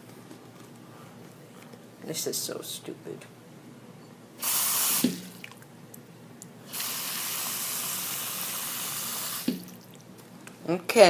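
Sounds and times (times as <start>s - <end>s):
tap running water: 4.4s - 5.6s, 6.7s - 10.1s.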